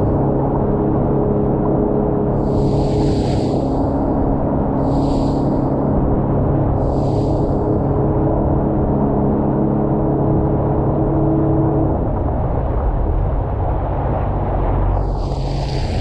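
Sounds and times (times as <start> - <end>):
low rumble: 0.0 - 9.3, 11.6 - 16.0
jet ski engine running: 0.0 - 9.9, 14.2 - 16.0
wind and water noise: 0.0 - 16.0.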